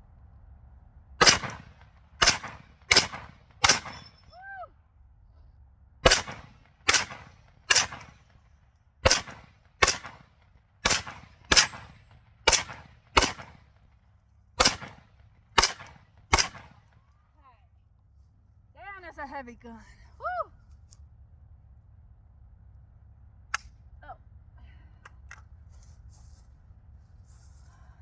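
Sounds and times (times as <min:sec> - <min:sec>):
rifle single shots: 0:01.2 - 0:04.2, 0:06.0 - 0:08.2, 0:09.0 - 0:13.7, 0:14.6 - 0:16.9.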